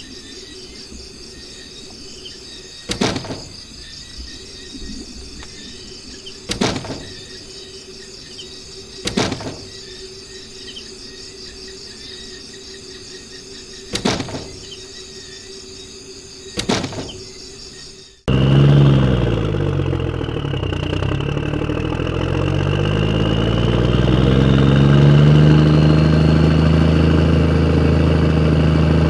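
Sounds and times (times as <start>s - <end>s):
crickets chirping: 0.0s - 18.3s
sharp knocks or squeals: 2.8s - 4.8s, 5.4s - 7.8s, 8.4s - 10.2s, 13.8s - 15.2s, 16.5s - 17.9s.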